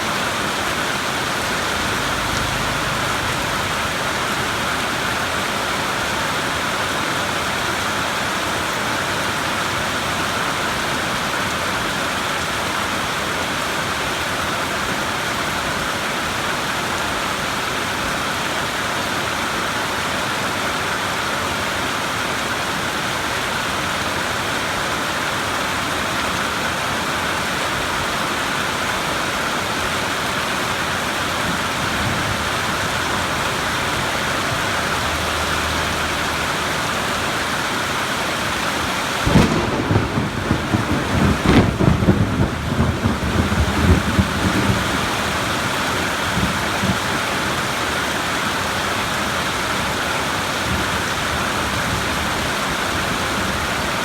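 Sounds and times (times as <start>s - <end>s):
steady rain falling: 0.0s - 54.0s
thunder clap rumbling: 39.2s - 47.0s.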